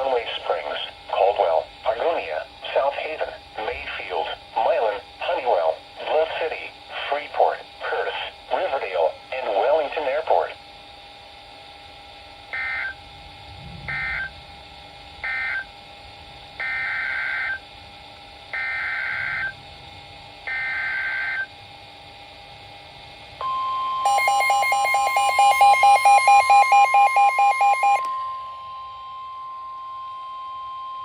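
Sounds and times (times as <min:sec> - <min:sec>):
steady warning alarm tone: 0:12.2 - 0:14.5, 0:15.2 - 0:15.9, 0:16.6 - 0:17.8, 0:18.4 - 0:21.7, 0:23.4 - 0:31.0
rapid electronic beeping: 0:24.1 - 0:28.0.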